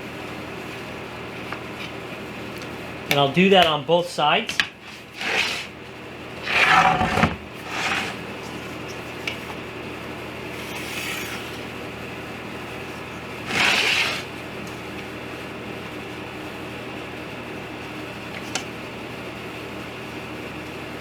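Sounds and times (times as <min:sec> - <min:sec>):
steady mechanical hum: 0:00.0 - 0:21.0
rubbing and scraping: 0:04.8 - 0:05.8, 0:06.4 - 0:08.9, 0:10.6 - 0:11.7, 0:13.4 - 0:14.3.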